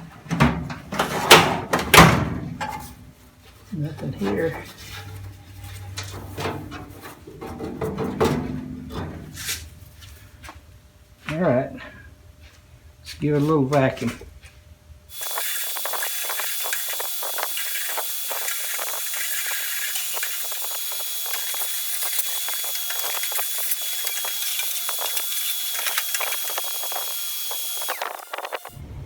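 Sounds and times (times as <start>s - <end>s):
nozzle clicking on metal drawer: 0.3s - 2.8s
vacuum cleaner running: 15.1s - 29.0s.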